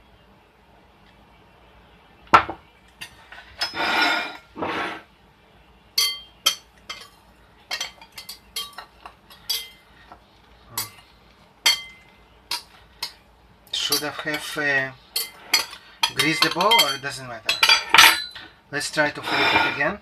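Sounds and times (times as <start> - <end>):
bowl scraping: 3.6 - 5.1, 19.2 - 20.0
dish clinking against plate: 6.0 - 9.8, 15.2 - 18.5.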